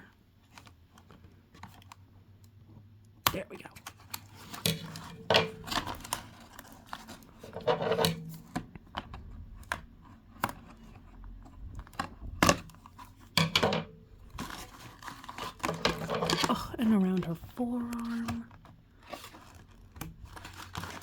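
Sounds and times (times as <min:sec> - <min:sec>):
plastic packaging rustling: 0:03.6 - 0:21.0.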